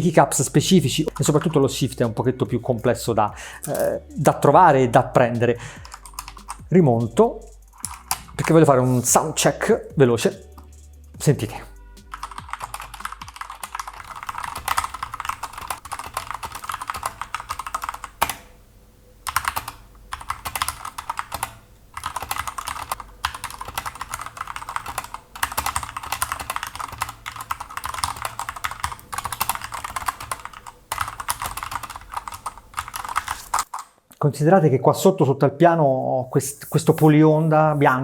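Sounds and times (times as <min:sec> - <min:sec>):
mechanical keyboard typing: 0:01.1 - 0:01.7, 0:05.8 - 0:06.7, 0:07.7 - 0:08.7, 0:12.0 - 0:18.5, 0:19.2 - 0:34.0.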